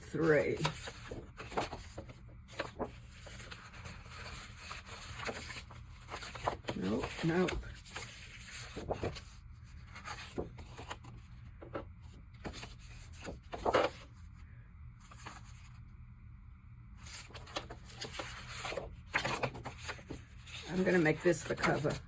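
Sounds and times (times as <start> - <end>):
cardstock rustling and scraping: 0.0 - 14.2, 17.0 - 22.0.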